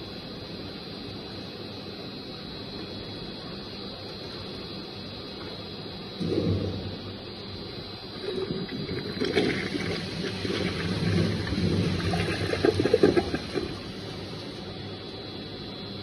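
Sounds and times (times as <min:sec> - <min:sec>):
steady background hum: 0:00.0 - 0:16.0
toilet flushing: 0:08.2 - 0:14.4.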